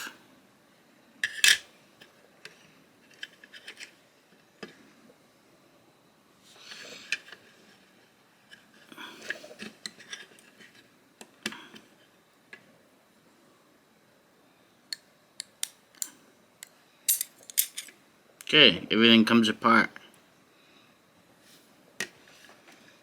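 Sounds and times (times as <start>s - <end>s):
knife parts clicking and clacking: 17.1s - 17.9s.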